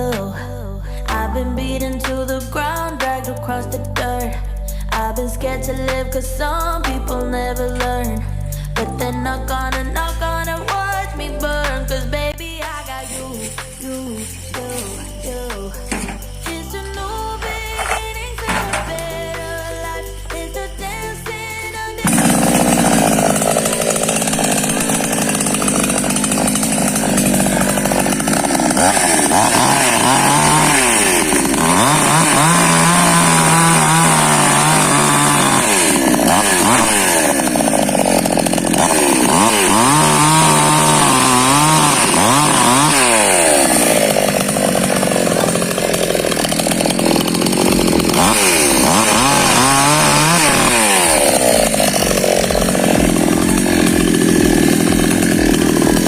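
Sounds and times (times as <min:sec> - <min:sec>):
chainsaw cutting firewood: 0:00.0 - 0:56.0.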